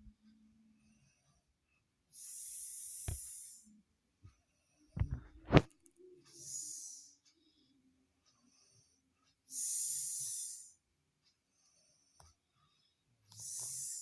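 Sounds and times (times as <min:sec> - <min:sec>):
snoring: 0:09.6 - 0:10.8, 0:13.3 - 0:14.0.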